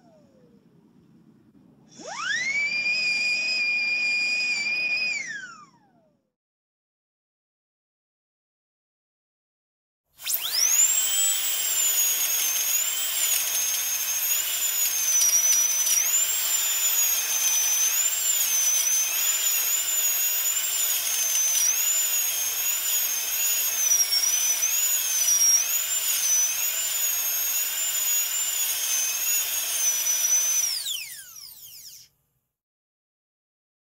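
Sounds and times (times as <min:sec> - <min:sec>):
dentist's drill whining: 0:01.9 - 0:05.7, 0:10.2 - 0:32.2.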